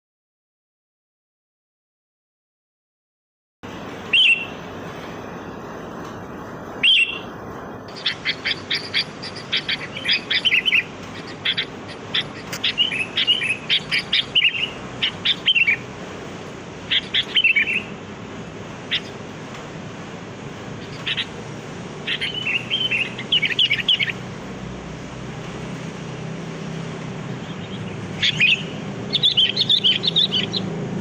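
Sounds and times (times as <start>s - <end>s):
steady hiss: 3.7s - 29.1s
bird calling and chattering: 4.1s - 4.6s, 6.8s - 19.4s, 20.7s - 24.4s, 27.2s - 31.0s.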